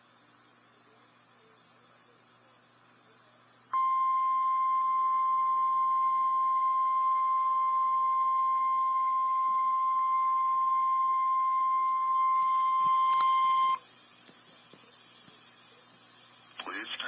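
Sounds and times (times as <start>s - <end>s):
loud steady alarm tone: 3.8s - 13.8s.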